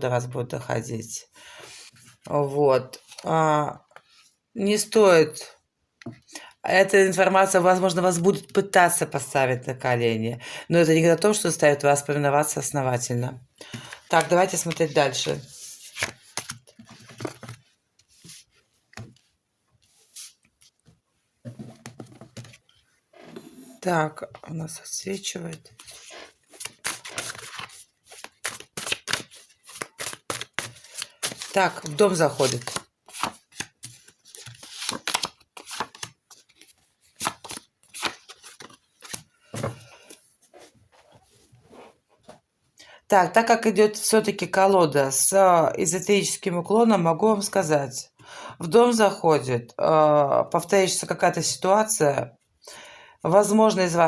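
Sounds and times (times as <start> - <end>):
cards rustling: 13.6 - 19.3, 25.4 - 40.7.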